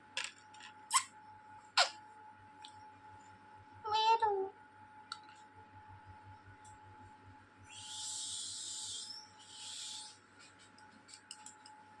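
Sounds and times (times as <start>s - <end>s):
parrot hissing: 7.8s - 10.2s.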